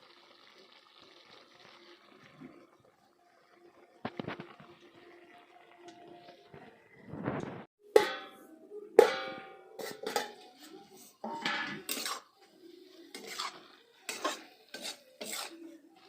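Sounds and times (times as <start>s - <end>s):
utensils clattering against pots: 7.9s - 8.4s, 9.0s - 15.8s
metal clanging on metal: 7.9s - 12.3s.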